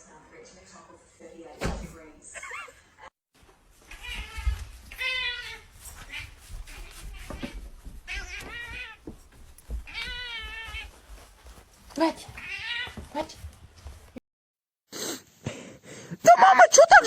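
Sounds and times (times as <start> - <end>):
cat meowing: 3.9 - 9.1, 9.8 - 11.0, 12.3 - 13.2.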